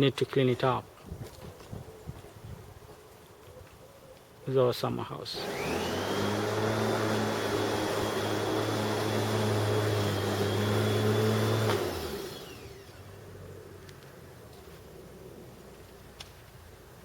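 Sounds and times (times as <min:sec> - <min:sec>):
electric lawnmower running: 0:05.3 - 0:13.2
lawnmower winding down: 0:05.3 - 0:13.2.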